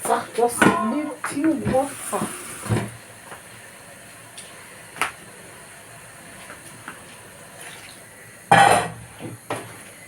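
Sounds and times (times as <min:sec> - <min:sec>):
stew hissing on stove: 0:01.7 - 0:06.2.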